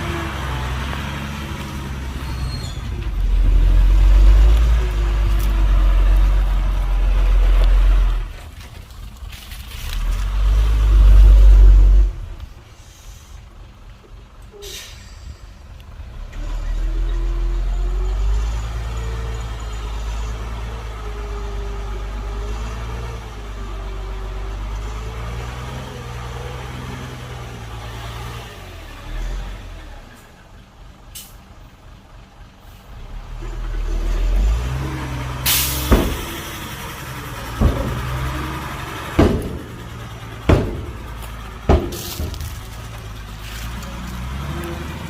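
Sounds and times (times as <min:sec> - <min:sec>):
diesel machinery engine running: 0:00.0 - 0:45.0
sharp metallic bangs: 0:35.5 - 0:42.8.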